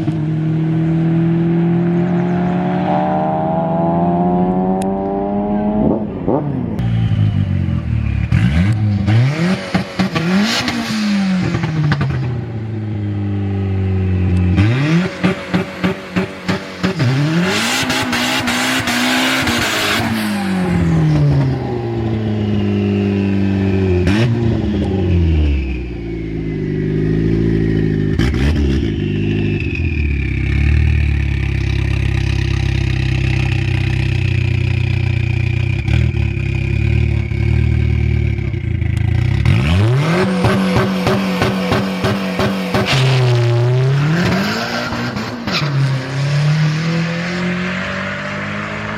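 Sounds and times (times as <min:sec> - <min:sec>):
car engine revving: 0:00.0 - 0:48.9
engine idling with high whine: 0:06.1 - 0:09.0, 0:20.5 - 0:39.5.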